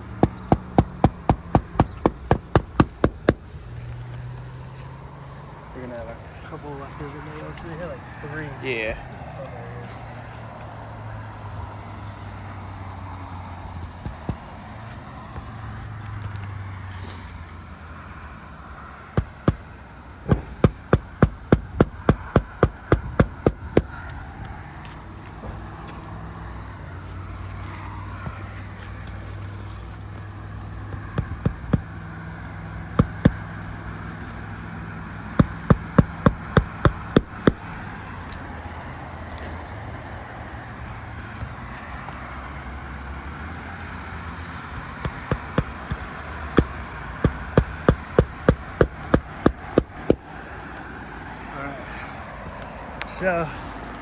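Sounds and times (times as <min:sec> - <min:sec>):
hammer striking roofing nails: 0:00.0 - 0:03.7, 0:13.9 - 0:14.6, 0:19.2 - 0:24.2, 0:30.9 - 0:32.1, 0:32.9 - 0:33.8, 0:35.3 - 0:38.0, 0:44.7 - 0:50.4.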